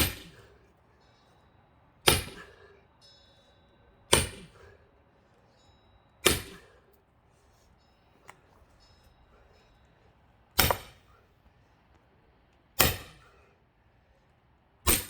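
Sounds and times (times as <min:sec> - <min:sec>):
axe striking log: 0:00.0 - 0:00.4, 0:02.1 - 0:02.5, 0:04.1 - 0:04.5, 0:06.2 - 0:06.7, 0:10.6 - 0:11.0, 0:12.8 - 0:13.3.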